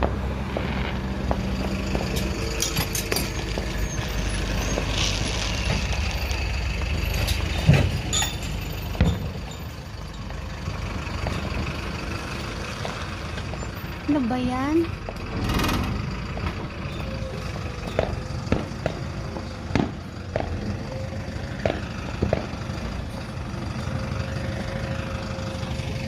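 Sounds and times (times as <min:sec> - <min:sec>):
fireworks bangs: 0:00.0 - 0:06.5, 0:08.9 - 0:09.5, 0:17.8 - 0:23.1
fireworks popping and crackling: 0:00.0 - 0:08.0, 0:08.9 - 0:09.6, 0:17.8 - 0:23.0
low steady rumble: 0:00.0 - 0:26.0.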